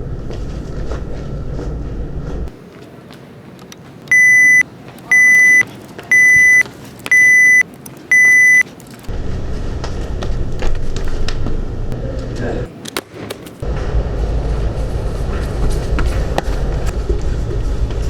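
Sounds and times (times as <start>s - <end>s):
low rumbling noise: 0.0s - 2.5s, 9.1s - 12.7s, 13.6s - 18.0s
high electronic beeps: 4.1s - 8.6s.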